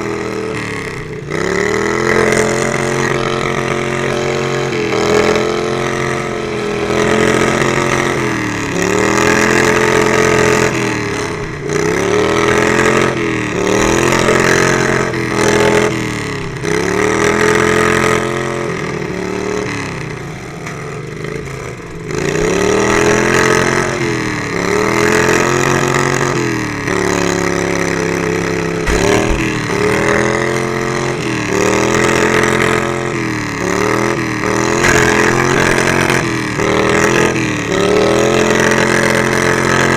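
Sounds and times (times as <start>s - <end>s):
lawnmower engine revving: 0.0s - 39.9s.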